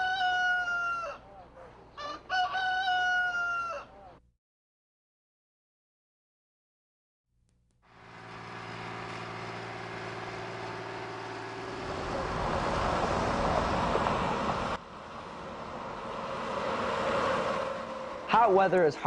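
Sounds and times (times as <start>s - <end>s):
road noise: 7.9s - 19.0s
vehicle engine running: 7.9s - 19.0s.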